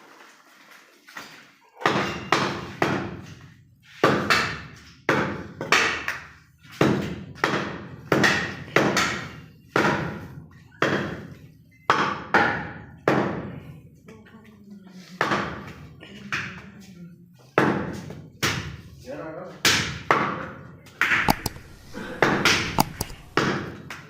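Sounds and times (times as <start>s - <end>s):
cleaver chopping meat and bone: 21.3s - 23.5s.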